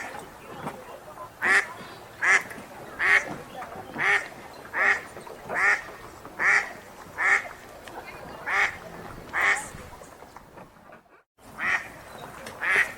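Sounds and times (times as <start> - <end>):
duck quacking: 1.4 - 3.3, 4.0 - 7.5, 8.4 - 9.7, 11.6 - 11.9, 12.6 - 12.9.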